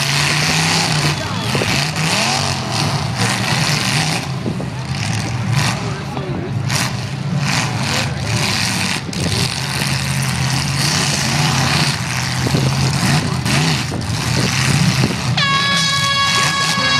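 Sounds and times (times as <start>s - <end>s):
car engines revving: 0.0s - 16.9s
loud noisy din: 15.3s - 16.9s
steady high tone: 15.4s - 16.9s.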